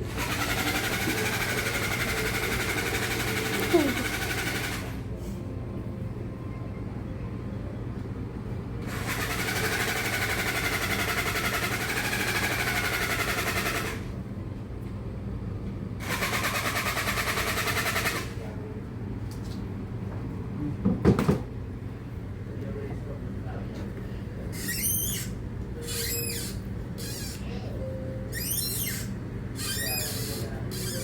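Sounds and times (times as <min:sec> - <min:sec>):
small motorised device buzzing: 0:24.6 - 0:27.4, 0:28.3 - 0:31.0.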